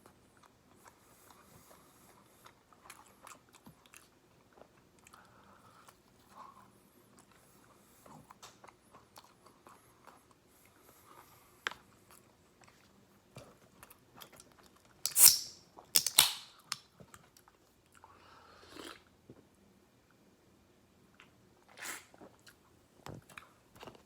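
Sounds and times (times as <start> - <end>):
chewing fried chicken: 0.0 - 15.0
wet mouth clicks: 15.1 - 16.3
crunchy bites: 15.1 - 16.7.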